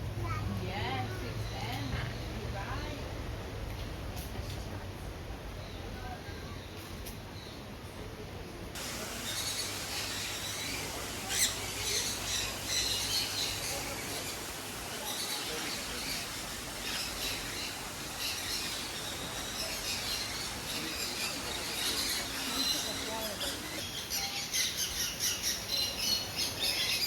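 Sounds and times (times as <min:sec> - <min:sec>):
parrots calling and chirping: 0:08.8 - 0:27.0.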